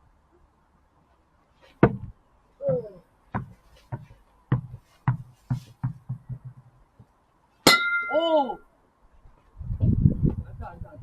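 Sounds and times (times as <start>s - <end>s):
ball bouncing on hard surface: 1.8s - 7.1s.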